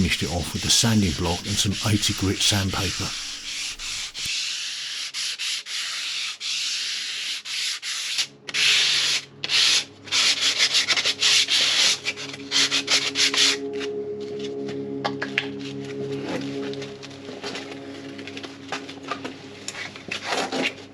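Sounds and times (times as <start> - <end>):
sandpaper rubbing on wood: 0.0 - 4.3.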